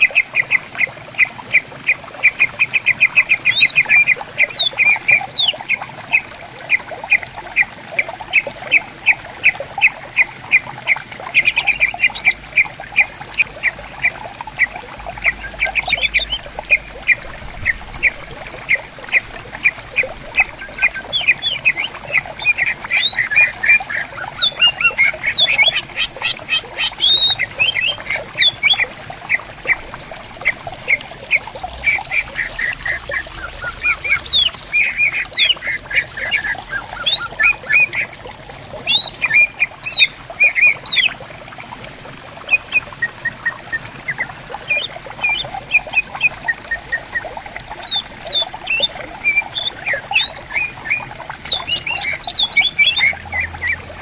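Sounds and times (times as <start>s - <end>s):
stream flowing: 0.0s - 54.0s
birds singing sharp chattering notes: 6.7s - 38.2s, 38.8s - 41.2s, 47.8s - 53.8s.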